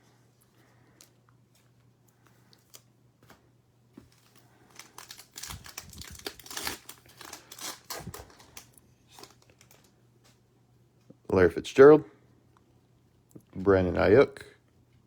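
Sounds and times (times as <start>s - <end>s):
plastic wrapper crinkling and tearing: 4.0s - 10.4s.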